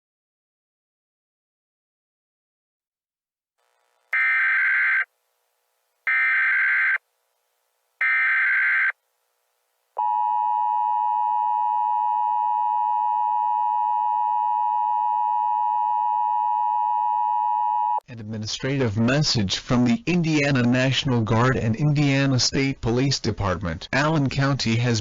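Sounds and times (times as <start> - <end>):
long steady attention tone: 3.6 - 18.0
data tone bursts: 4.2 - 5.1.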